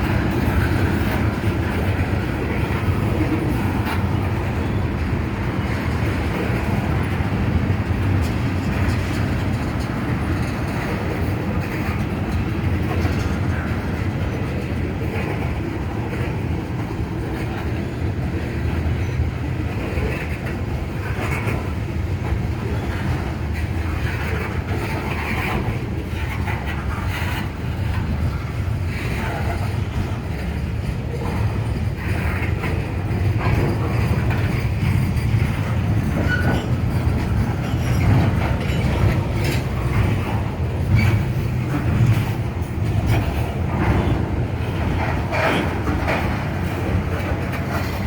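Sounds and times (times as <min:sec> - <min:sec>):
freight train wheels rumbling: 0:00.0 - 0:48.0.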